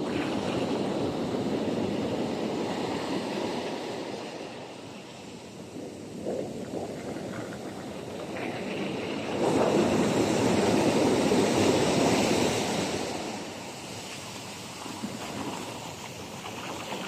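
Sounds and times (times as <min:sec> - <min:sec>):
sea waves washing onto shore: 0:00.0 - 0:17.0.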